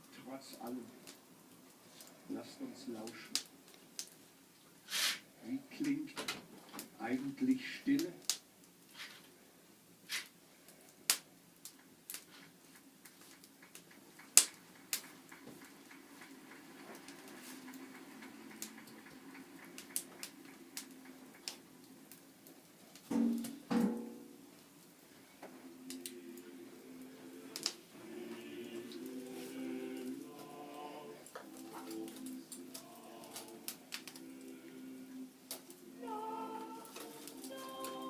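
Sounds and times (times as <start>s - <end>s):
wood fire crackling: 0.0s - 38.0s
soft music of held low notes: 20.7s - 38.0s.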